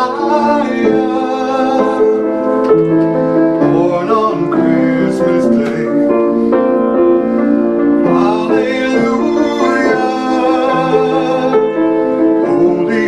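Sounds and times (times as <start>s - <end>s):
man singing held notes: 0.0s - 2.3s, 3.6s - 6.2s, 8.0s - 11.8s
piano: 0.0s - 13.0s
slow christmas song: 0.0s - 13.0s.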